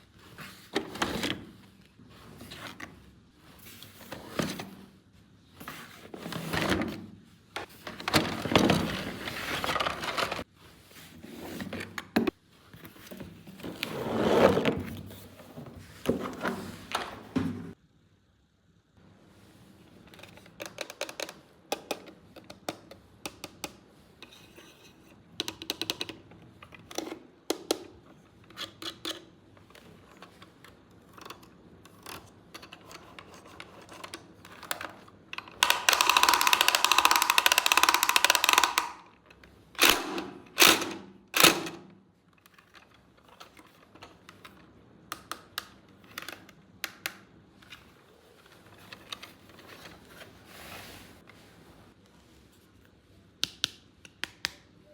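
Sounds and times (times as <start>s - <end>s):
plastic parts clicking and tapping: 20.1s - 23.8s, 25.4s - 41.8s, 42.4s - 47.9s.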